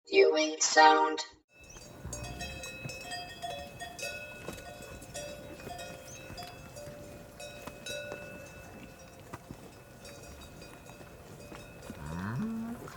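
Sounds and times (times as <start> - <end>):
cowbells clanking: 1.6 - 12.9.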